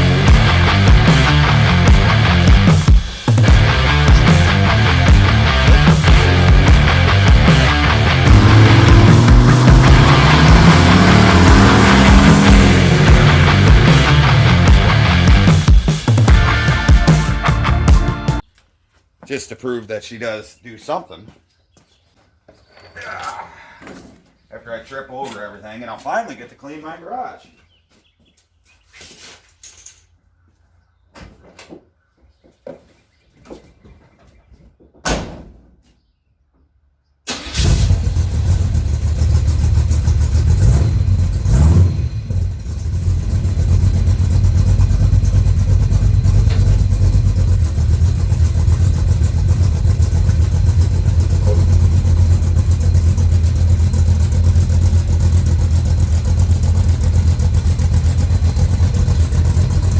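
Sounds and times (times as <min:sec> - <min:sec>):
vee eight engine starting and idling: 0:00.0 - 0:15.7, 0:37.3 - 0:59.9.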